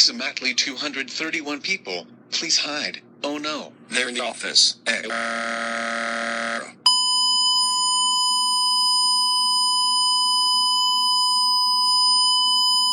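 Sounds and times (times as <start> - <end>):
high-pitched electronic test tone: 5.1 - 12.9.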